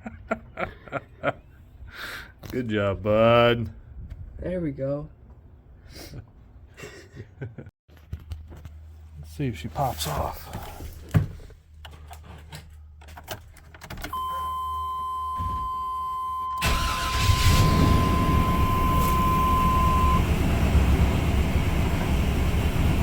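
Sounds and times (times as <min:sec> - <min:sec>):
electronic warning tone: 0:14.2 - 0:20.3
engine cranking and running: 0:16.6 - 0:23.0.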